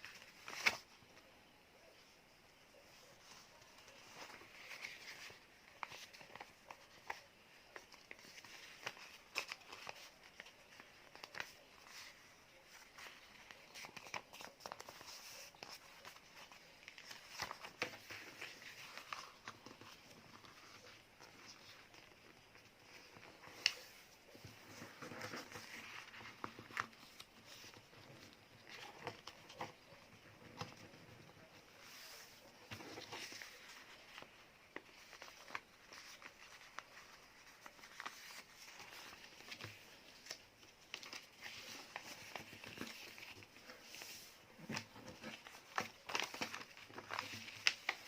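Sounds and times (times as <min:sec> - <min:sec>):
paper rustling and crinkling: 0:00.0 - 0:01.3, 0:02.8 - 0:48.0.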